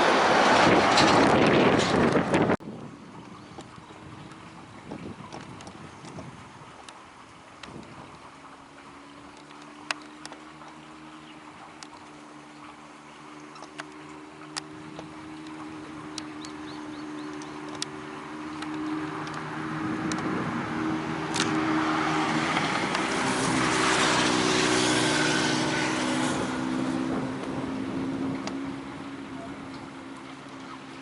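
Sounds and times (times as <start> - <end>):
car passing by: 0.0 - 2.5, 9.8 - 31.0.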